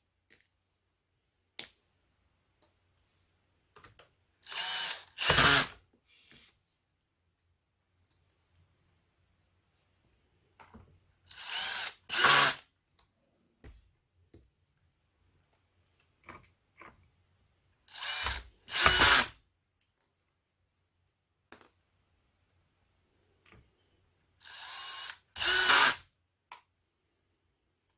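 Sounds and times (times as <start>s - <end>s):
power screwdriver running: 4.4s - 5.8s, 11.3s - 12.6s, 17.9s - 19.4s, 24.4s - 26.0s.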